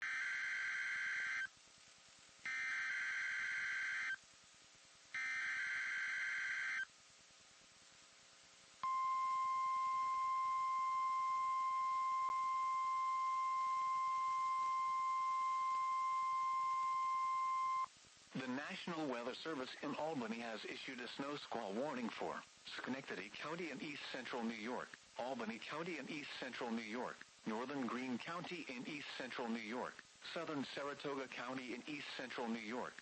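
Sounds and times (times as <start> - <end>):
steady alarm tone: 0.0 - 1.5, 2.5 - 4.2, 5.2 - 6.9.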